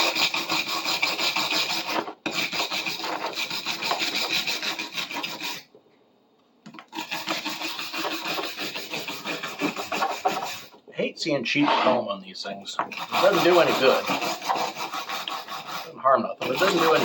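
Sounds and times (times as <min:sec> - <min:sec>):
rasping and scraping on clamp handle: 0:06.7 - 0:10.8, 0:12.8 - 0:17.0.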